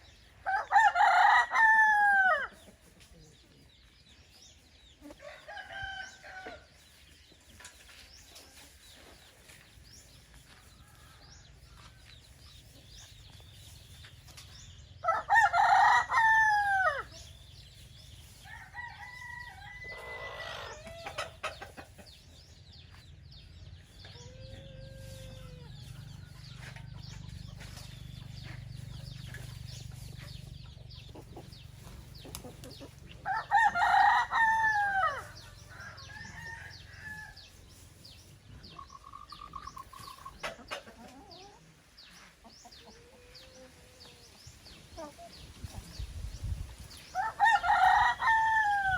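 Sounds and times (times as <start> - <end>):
chickens clucking: 0.0 - 48.9
roosters crowing: 0.4 - 2.7, 5.1 - 6.8, 14.6 - 21.8, 23.3 - 30.9, 31.5 - 37.8, 47.0 - 48.9.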